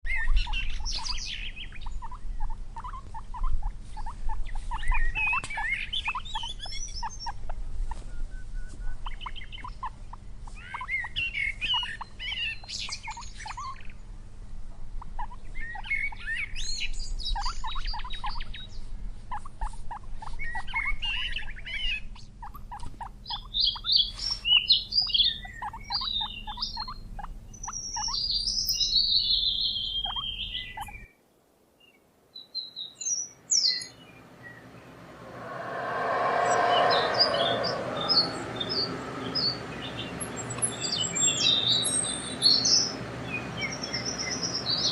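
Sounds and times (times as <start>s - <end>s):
birds calling and chirping: 22.8s - 31.0s, 32.5s - 44.9s.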